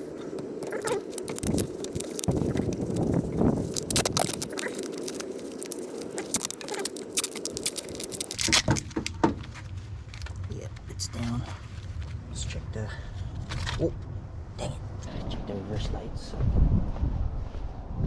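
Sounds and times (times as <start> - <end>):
duct tape crackling off roll: 0.0 - 10.5.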